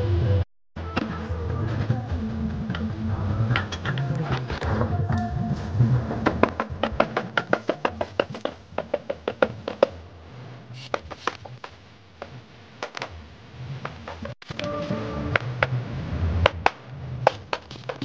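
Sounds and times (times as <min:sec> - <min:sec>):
background music: 0:00.0 - 0:08.4, 0:14.5 - 0:16.7
sharp knocks and taps: 0:06.4 - 0:09.9.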